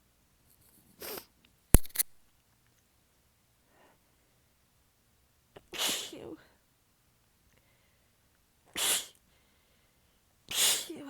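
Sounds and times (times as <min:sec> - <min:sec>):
woman sneezing: 0:05.6 - 0:06.5, 0:08.8 - 0:09.2, 0:10.5 - 0:11.0.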